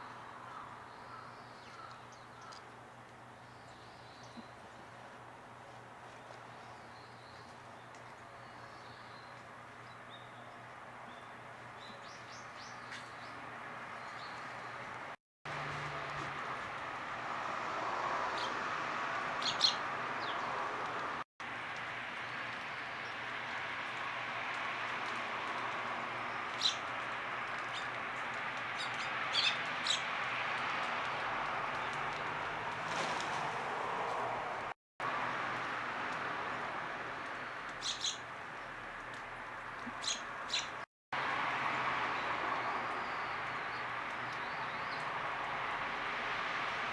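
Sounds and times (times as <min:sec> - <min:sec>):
small birds chirping: 0:19.3 - 0:21.2, 0:28.7 - 0:30.2, 0:37.2 - 0:40.8.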